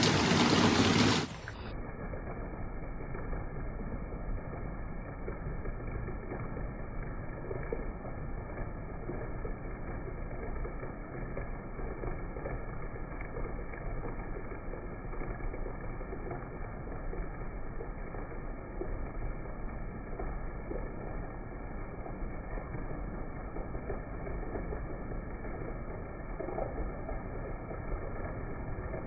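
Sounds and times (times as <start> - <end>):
heavy rain falling: 0.0 - 29.0.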